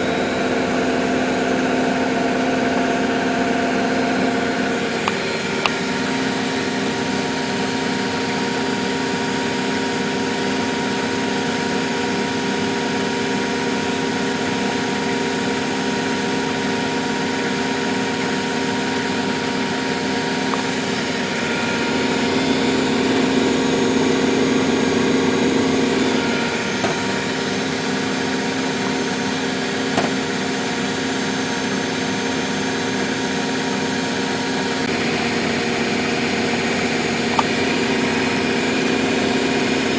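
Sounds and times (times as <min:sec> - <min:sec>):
washing machine motor hum: 0:00.0 - 0:39.9.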